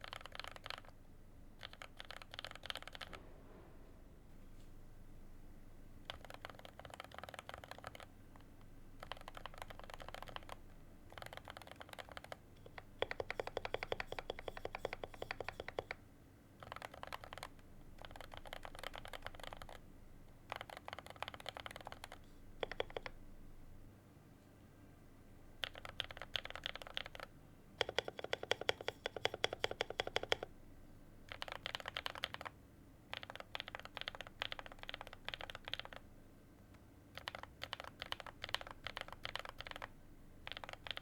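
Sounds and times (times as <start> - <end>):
mechanical keyboard keystroke clicks: 20.5 - 23.2, 36.7 - 39.9, 40.5 - 41.0.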